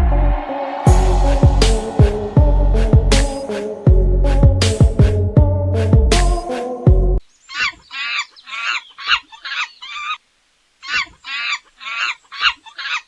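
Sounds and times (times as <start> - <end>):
music sting: 0.0 - 7.1
high-pitched quavering animal calls: 7.5 - 10.2, 10.8 - 13.0.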